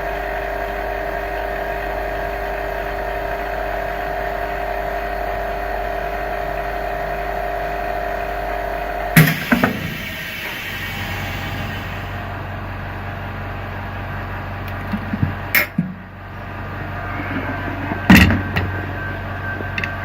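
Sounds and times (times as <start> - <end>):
laminating machine humming: 0.0 - 20.0
loud click: 9.2 - 10.0.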